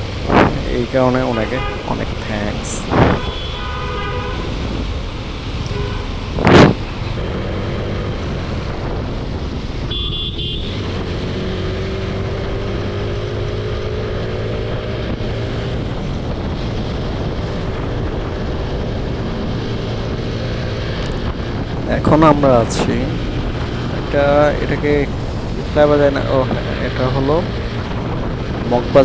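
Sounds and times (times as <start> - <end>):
road noise: 0.0 - 29.0
short horn beep: 5.7 - 6.8.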